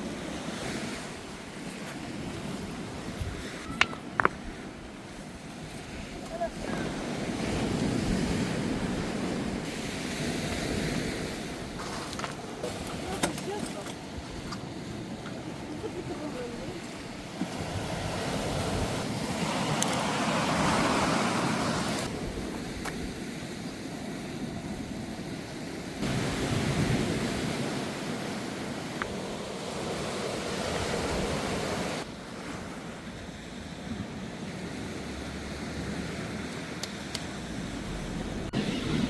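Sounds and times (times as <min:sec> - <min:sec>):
sea waves washing onto beach: 0:00.0 - 0:39.0
wind on microphone: 0:00.0 - 0:39.0.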